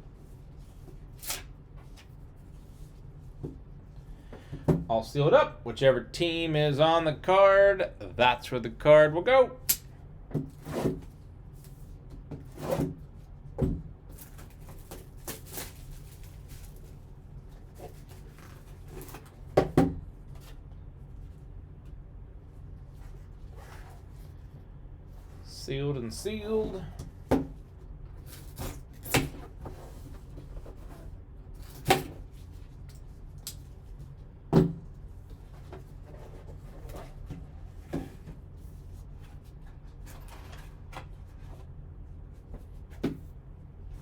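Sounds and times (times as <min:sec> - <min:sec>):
low steady hum: 0:00.0 - 0:44.0
paper rustling and scraping: 0:14.1 - 0:19.4, 0:23.0 - 0:24.4.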